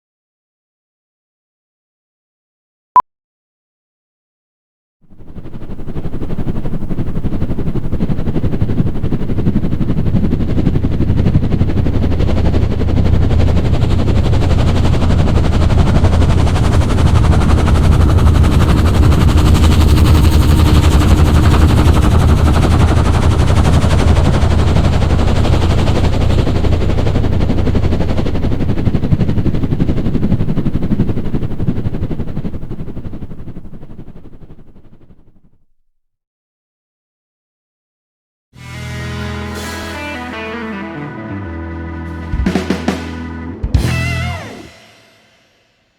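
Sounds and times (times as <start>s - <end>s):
helicopter rotor blades chopping: 5.1s - 35.5s.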